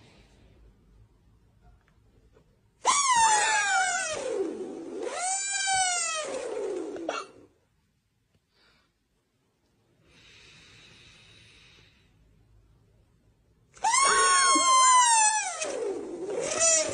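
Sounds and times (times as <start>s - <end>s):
high-pitched wailing cry: 2.8s - 4.4s, 5.0s - 6.7s, 13.8s - 16.9s.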